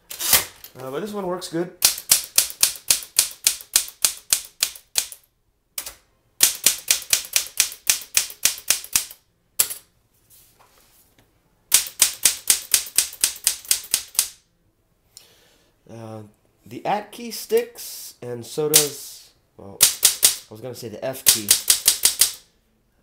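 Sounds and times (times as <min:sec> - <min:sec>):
typewriter keystrokes: 0:01.8 - 0:05.2, 0:05.8 - 0:09.8, 0:11.7 - 0:14.4, 0:19.8 - 0:20.4, 0:21.2 - 0:22.4.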